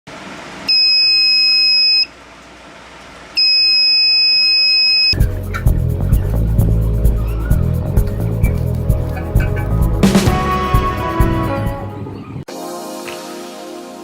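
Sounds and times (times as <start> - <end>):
high-pitched alarm buzzer beeps: 0.7 - 2.1, 3.4 - 5.2
music with a beat: 5.2 - 11.9.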